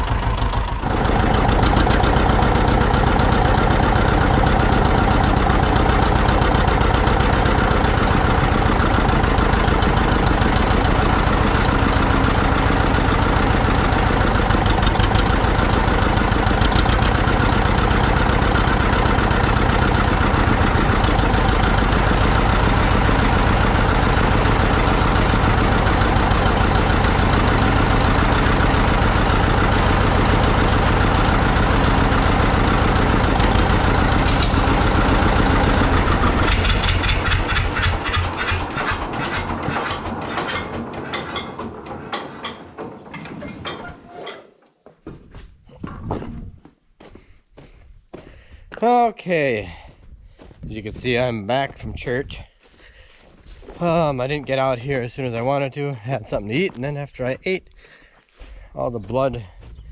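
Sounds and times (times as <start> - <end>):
engine running steadily: 0.0 - 43.9.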